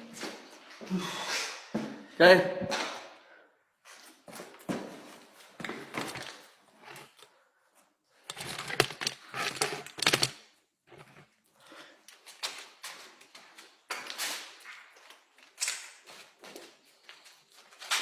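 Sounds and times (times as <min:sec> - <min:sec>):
rustling and clicking: 0:08.3 - 0:11.2.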